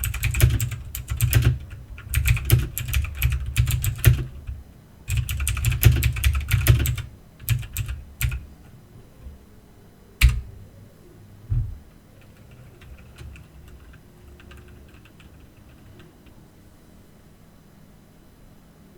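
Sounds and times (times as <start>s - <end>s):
mechanical keyboard key clicks: 0.0s - 8.4s
dull thump: 11.5s - 11.9s.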